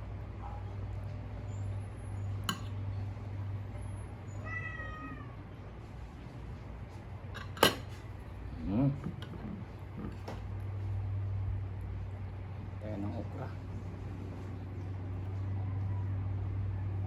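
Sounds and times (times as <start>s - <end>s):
steady low hum: 0.0s - 17.0s
cat meowing: 4.3s - 5.6s.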